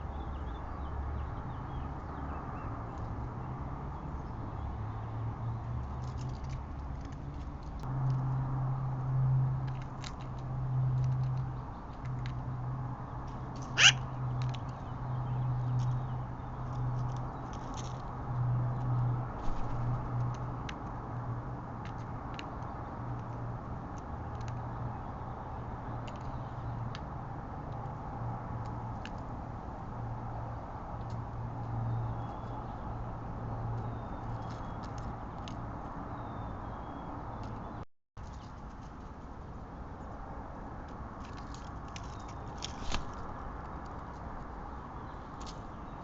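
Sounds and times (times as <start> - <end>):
small clicks and ticks: 5.8 - 8.3, 9.6 - 12.4.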